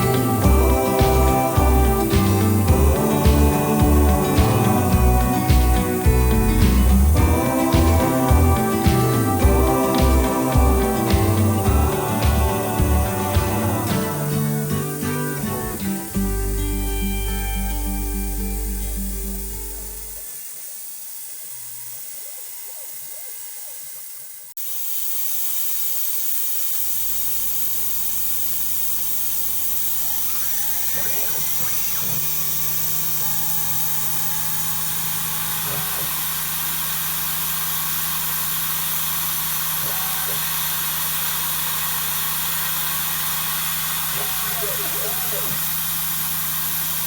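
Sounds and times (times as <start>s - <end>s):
music: 0.0s - 20.2s
milling machine spindle whine: 0.0s - 47.0s
rising squeals: 30.0s - 36.6s.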